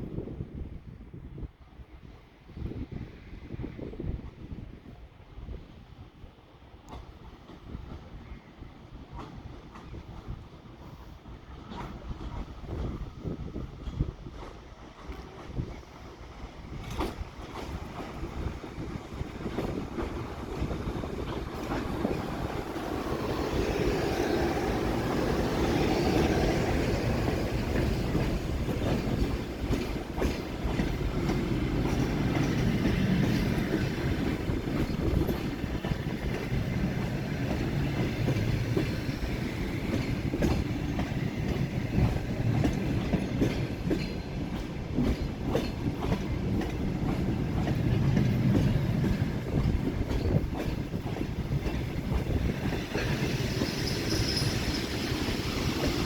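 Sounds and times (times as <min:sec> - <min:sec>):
train carriages rumbling: 0:06.8 - 0:56.0
wheels clacking over rail joints: 0:16.7 - 0:56.0.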